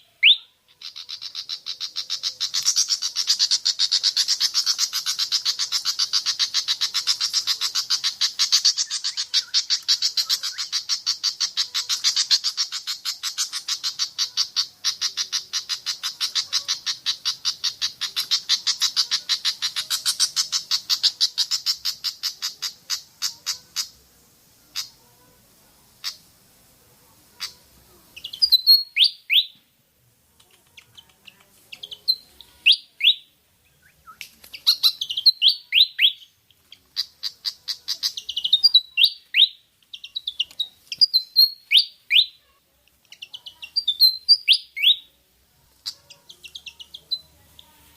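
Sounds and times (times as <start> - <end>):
bird squeaky whistled phrases: 0.0 - 23.9, 28.2 - 29.6, 31.7 - 36.3, 37.0 - 42.4, 43.1 - 45.1.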